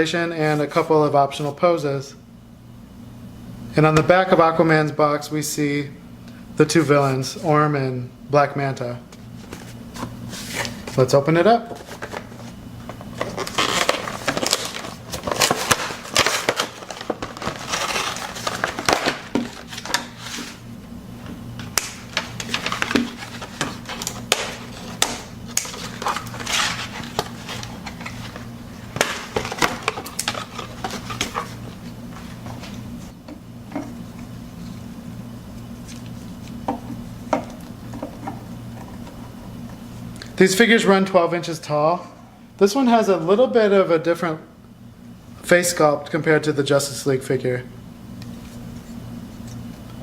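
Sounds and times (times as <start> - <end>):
steady low hum: 0.0 - 50.0
packaging rustling and crinkling: 9.3 - 20.6, 21.6 - 33.2.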